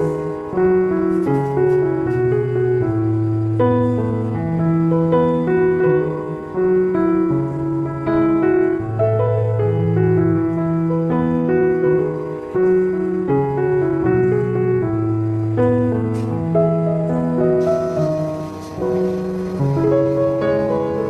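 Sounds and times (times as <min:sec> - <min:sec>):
slow piano chords: 0:00.0 - 0:21.0.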